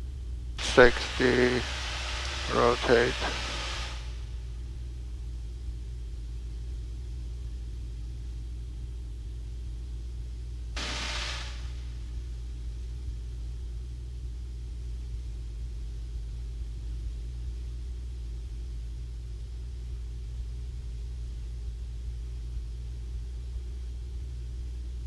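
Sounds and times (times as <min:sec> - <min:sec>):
airplane engine droning: 0:00.6 - 0:04.2.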